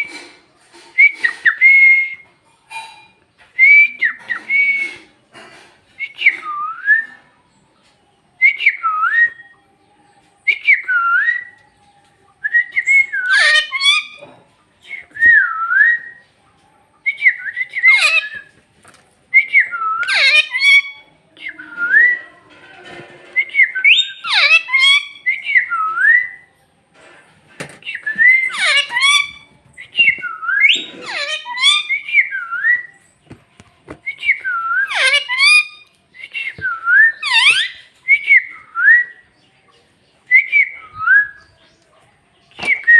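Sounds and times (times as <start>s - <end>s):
parrot whistling: 23.7s - 26.4s, 28.0s - 32.9s, 34.3s - 35.8s, 36.6s - 38.6s
parrot scratchy calls: 28.3s - 29.5s, 30.7s - 32.0s, 34.9s - 35.8s.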